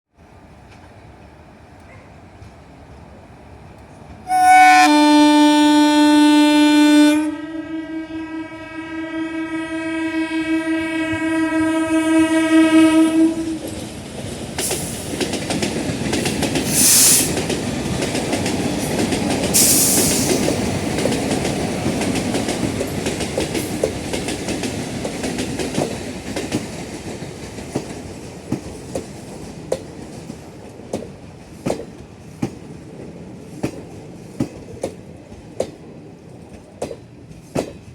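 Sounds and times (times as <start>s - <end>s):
train rumble: 0.2s - 37.9s
locomotive horn honking: 4.3s - 13.7s
wheels clacking over rail joints: 13.4s - 37.9s.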